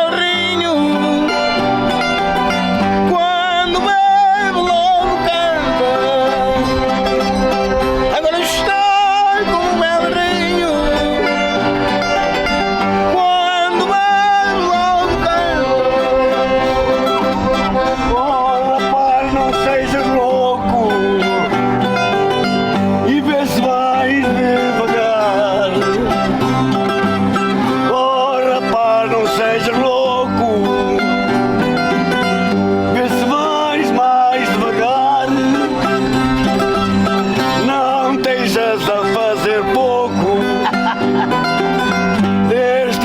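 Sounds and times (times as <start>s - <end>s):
accordion: 0.0s - 43.0s
plucked string instruments: 0.0s - 43.0s
voices singing: 0.0s - 43.0s.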